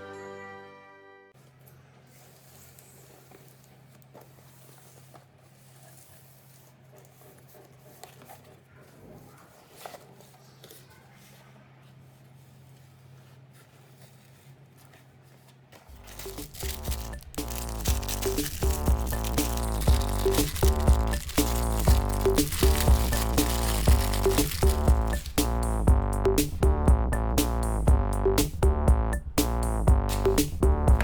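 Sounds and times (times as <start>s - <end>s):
objects being handled: 9.5s - 25.9s, 30.1s - 31.0s
low electrical hum: 15.9s - 27.0s.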